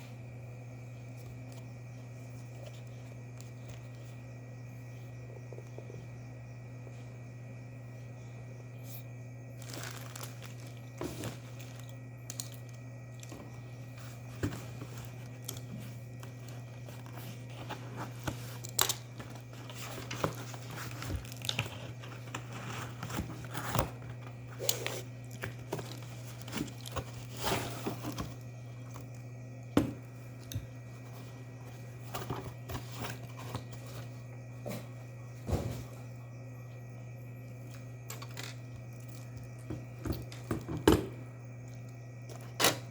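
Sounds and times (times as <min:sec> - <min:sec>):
steady low hum: 0:00.0 - 0:42.9
packaging crinkling and rustling: 0:09.5 - 0:29.1.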